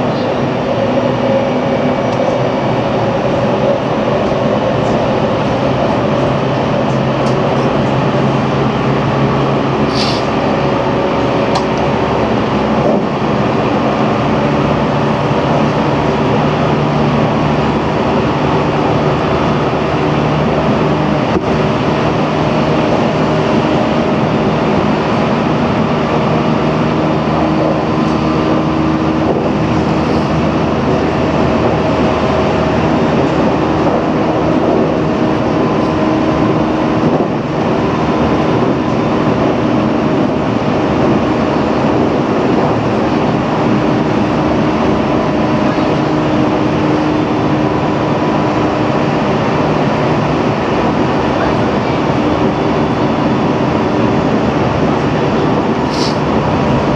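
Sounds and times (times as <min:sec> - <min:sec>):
train motor and gear tones: 0:00.0 - 0:14.9
train wheels rumbling on rail: 0:00.0 - 0:56.9.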